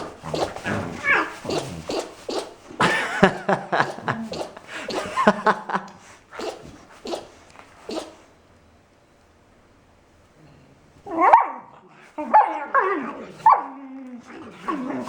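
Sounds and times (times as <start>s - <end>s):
cat sneezing: 0.0s - 8.4s.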